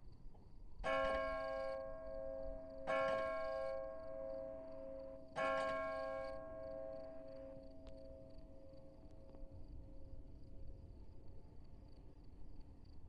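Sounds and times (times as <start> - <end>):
church bell striking: 0.8 - 8.2.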